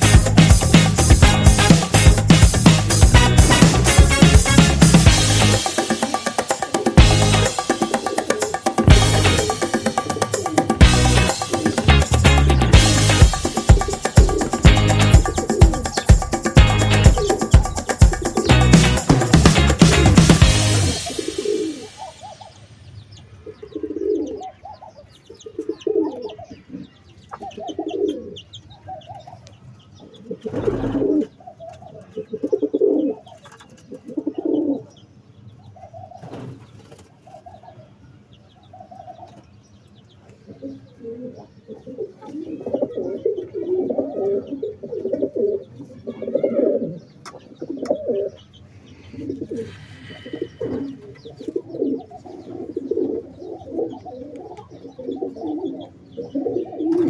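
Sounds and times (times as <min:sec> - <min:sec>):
pigeons cooing: 0:00.0 - 0:57.0
sharp thump: 0:03.2 - 0:04.6.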